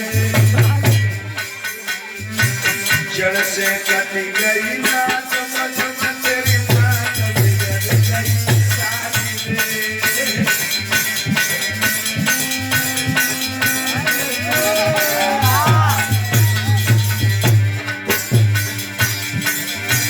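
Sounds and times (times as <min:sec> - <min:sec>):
folk music with drum beat: 0:00.0 - 0:20.0.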